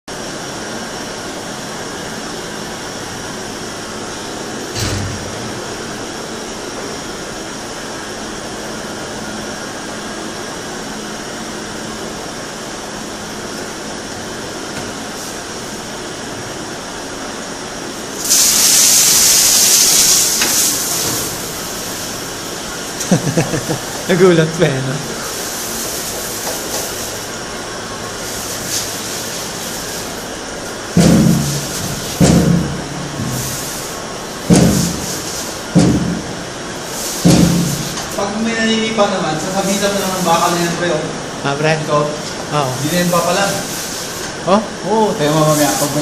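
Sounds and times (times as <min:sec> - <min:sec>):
single thump: 0:04.8 - 0:05.4, 0:31.0 - 0:33.4, 0:37.2 - 0:37.9
loud spraying hiss: 0:18.1 - 0:24.0, 0:25.1 - 0:27.4, 0:28.1 - 0:36.2, 0:36.8 - 0:38.4, 0:39.3 - 0:40.8, 0:45.2 - 0:46.0.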